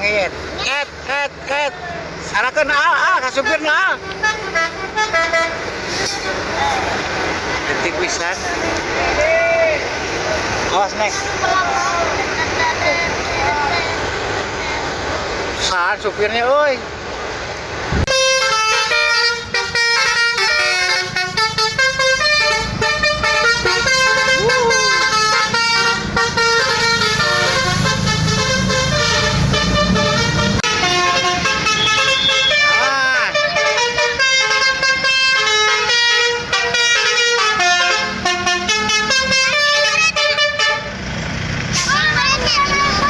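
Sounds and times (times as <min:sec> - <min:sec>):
bus musical horn playing a tune: 0:03.4 - 0:06.5, 0:18.1 - 0:41.1.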